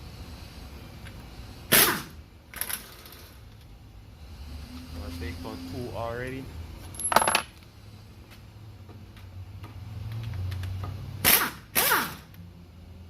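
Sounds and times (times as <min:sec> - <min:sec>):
power tool bursts: 0:11.2 - 0:12.2.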